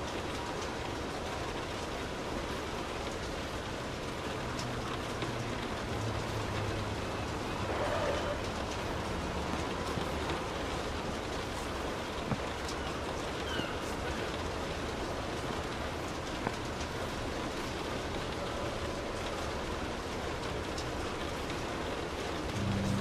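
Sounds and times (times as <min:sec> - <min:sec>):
rain pattering on car roof: 0:00.0 - 0:23.0
low rumble: 0:22.5 - 0:23.0.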